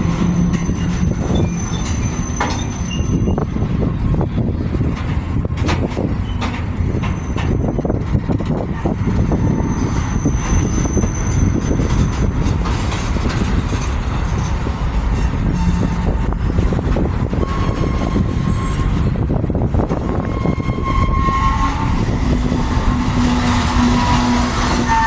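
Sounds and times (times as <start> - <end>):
high wheel squeal: 0.0 - 3.5, 8.8 - 12.3, 14.4 - 16.6, 17.2 - 19.2, 20.0 - 25.0
freight train cars rumbling: 0.0 - 25.0
train cars clanking: 0.0 - 25.0.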